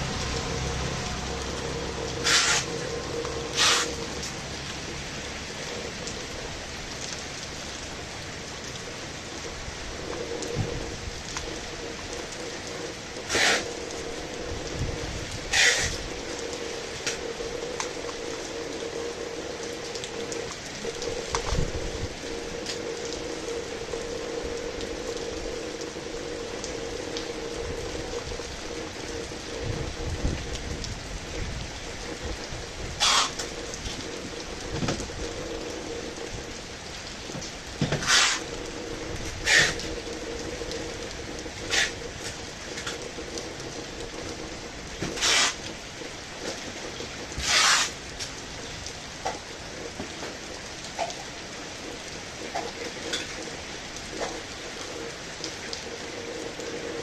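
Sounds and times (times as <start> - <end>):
low hum: 0.0 - 37.7
heavy rain falling: 0.0 - 57.0.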